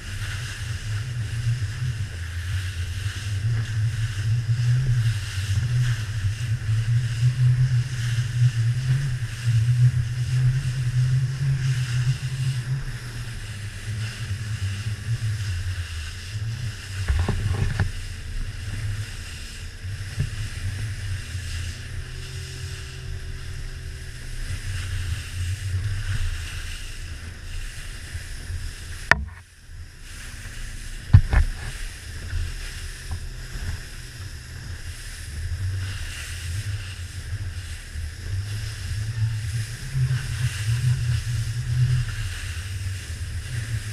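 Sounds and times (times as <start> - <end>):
outboard motor running: 0.0 - 43.9
wind on microphone: 0.0 - 43.9
sharp knocks: 29.1 - 29.4.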